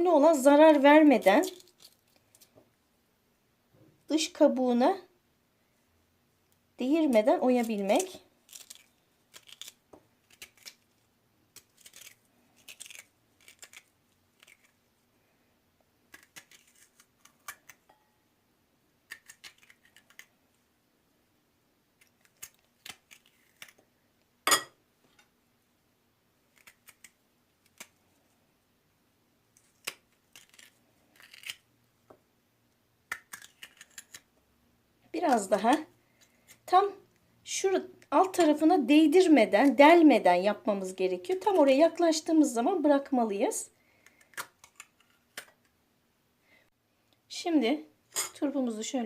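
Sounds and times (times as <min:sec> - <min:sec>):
spoon scraping radish: 0:11.6 - 0:14.8, 0:38.0 - 0:38.7.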